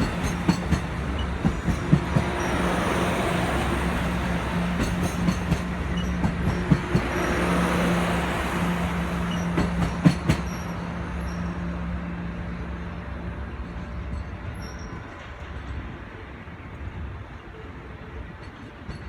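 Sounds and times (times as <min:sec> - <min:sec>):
train wheels clicking over rail joints: 0:00.0 - 0:08.1, 0:08.9 - 0:10.8.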